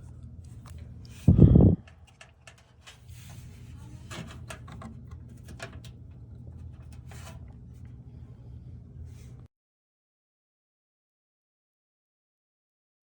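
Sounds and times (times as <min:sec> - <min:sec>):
faint scrapes and clicks: 0:00.0 - 0:08.0
steady low hum: 0:00.0 - 0:09.5.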